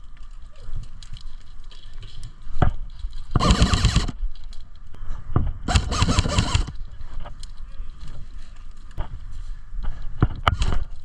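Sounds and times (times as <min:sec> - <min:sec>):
airsoft gun full-auto bursts: 0:03.4 - 0:04.2, 0:05.7 - 0:06.8.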